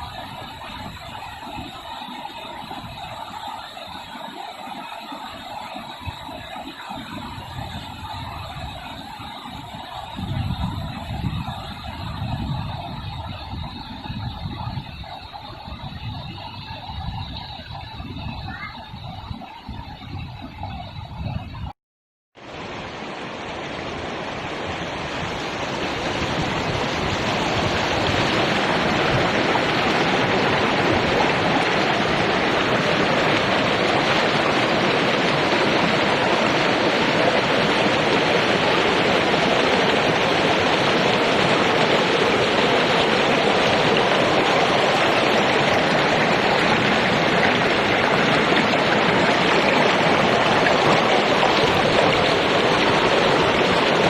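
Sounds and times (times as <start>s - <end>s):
river water rushing: 22.4s - 54.0s.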